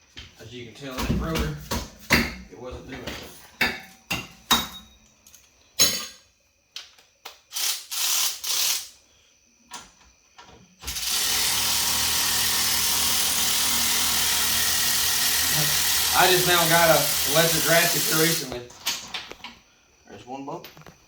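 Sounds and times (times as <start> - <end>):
metal tool clanks: 5.8 - 6.2
cordless electric ratchet running: 7.5 - 8.9, 10.8 - 18.5
ratchet clicks: 7.5 - 8.9.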